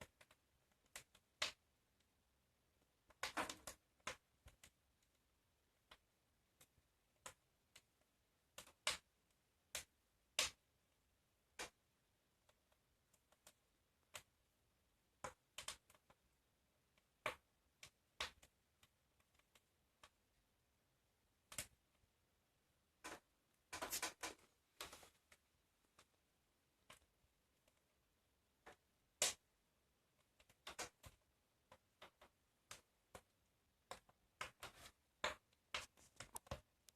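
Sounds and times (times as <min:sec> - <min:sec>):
wood fire crackling: 0:22.9 - 0:36.9.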